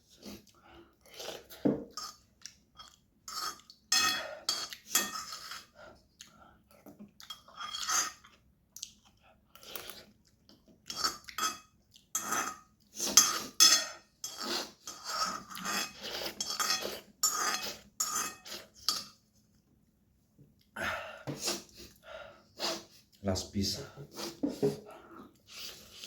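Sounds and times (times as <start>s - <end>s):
slurping noodles: 0.1s - 2.1s, 14.3s - 18.9s, 24.1s - 26.0s.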